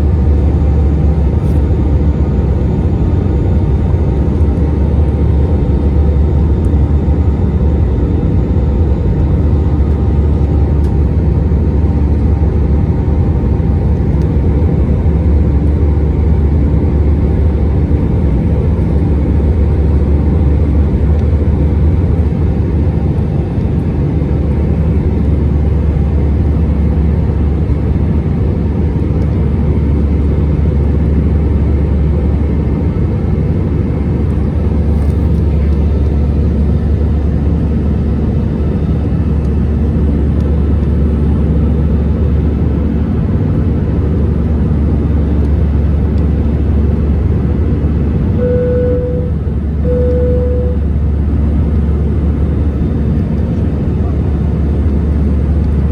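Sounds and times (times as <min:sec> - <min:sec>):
airplane cabin engine rumble: 0:00.0 - 0:55.9
faint steady hum: 0:48.2 - 0:55.9.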